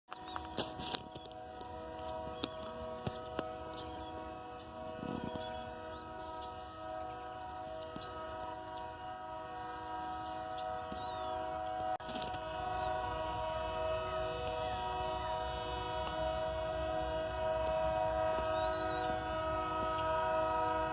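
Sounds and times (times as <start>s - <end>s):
low rumble of train: 0.1s - 20.9s
train horn steady chord: 0.1s - 20.9s.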